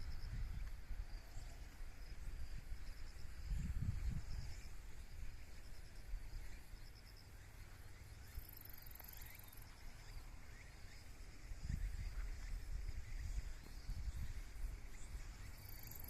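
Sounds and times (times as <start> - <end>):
insects chirping in trills: 0.0 - 16.0
high buzzing insect trill: 7.9 - 16.0.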